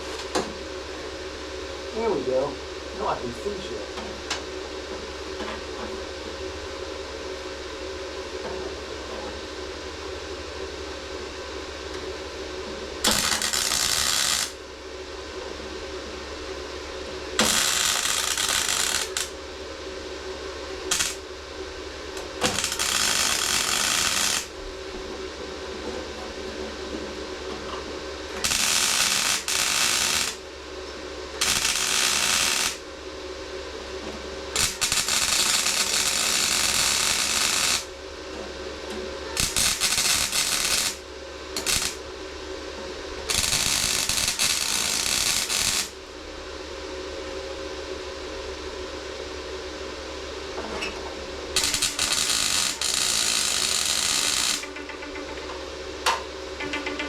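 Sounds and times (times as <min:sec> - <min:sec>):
welding arc crackling: 0:13.0 - 0:14.6, 0:17.4 - 0:19.4, 0:20.9 - 0:21.3, 0:22.2 - 0:24.6, 0:28.4 - 0:30.4, 0:31.4 - 0:32.8, 0:34.6 - 0:37.9, 0:39.4 - 0:41.0, 0:41.6 - 0:42.0, 0:43.3 - 0:46.0, 0:51.6 - 0:54.7
welder humming: 0:13.0 - 0:14.7, 0:17.3 - 0:19.5, 0:20.8 - 0:25.2, 0:28.2 - 0:30.6, 0:31.3 - 0:32.9, 0:34.0 - 0:37.9, 0:39.4 - 0:42.0, 0:43.1 - 0:46.1, 0:51.5 - 0:54.9.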